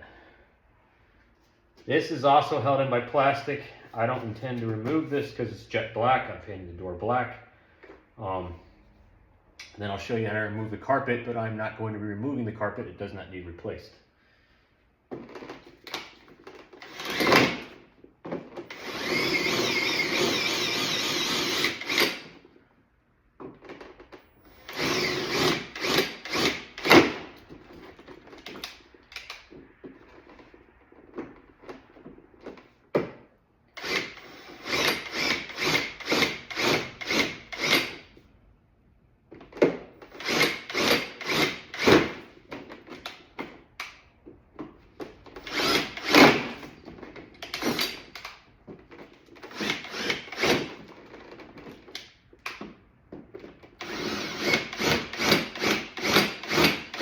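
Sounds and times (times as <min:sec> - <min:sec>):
power drill drilling: 0:16.8 - 0:17.8, 0:18.6 - 0:22.4, 0:24.4 - 0:27.3, 0:33.8 - 0:38.1, 0:40.0 - 0:42.2, 0:45.4 - 0:46.7, 0:47.5 - 0:48.1, 0:49.4 - 0:50.8, 0:53.8 - 0:57.0.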